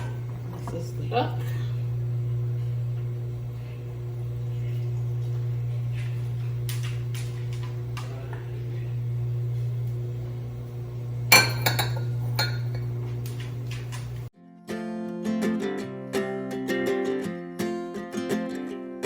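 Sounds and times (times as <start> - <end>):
steady low hum: 0.0 - 14.3
utensils and dishes clinking: 11.3 - 14.3.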